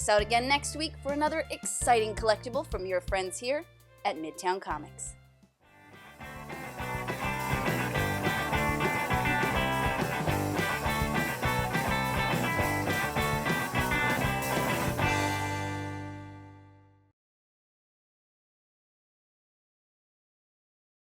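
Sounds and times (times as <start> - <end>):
rock music with electric guitar: 5.7 - 16.8.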